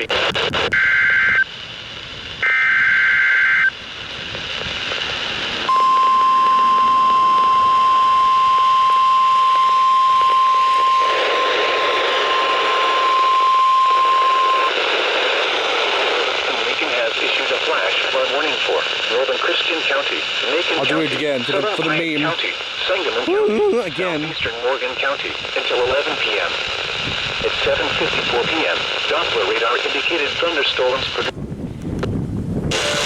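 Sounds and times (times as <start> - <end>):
radio static hiss: 0.0 - 31.4, 32.6 - 33.0
steady warning alarm tone: 5.6 - 15.4.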